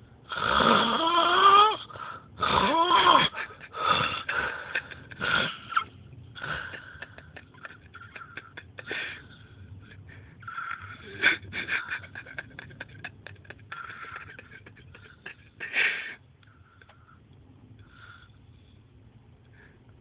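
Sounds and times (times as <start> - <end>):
man snoring: 0.3 - 4.5.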